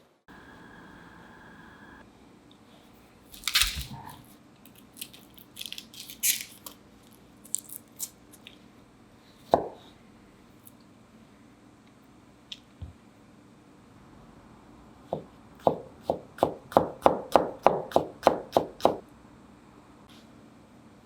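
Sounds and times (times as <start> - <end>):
garlic skin crackling and tearing: 3.3 - 8.2.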